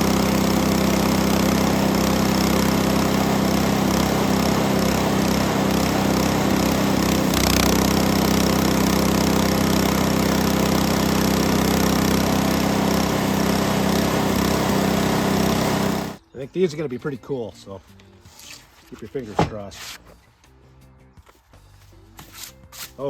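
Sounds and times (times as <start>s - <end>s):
small gasoline engine running: 0.0s - 16.2s.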